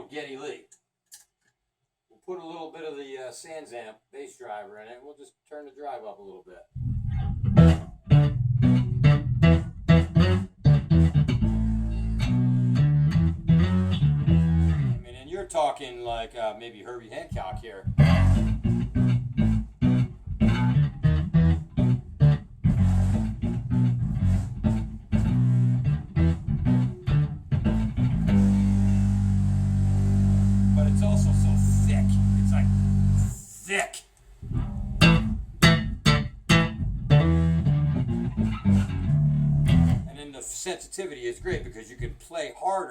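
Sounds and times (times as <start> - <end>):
fuzzy electric bass notes: 6.8 - 15.2, 17.3 - 33.4, 34.4 - 40.2.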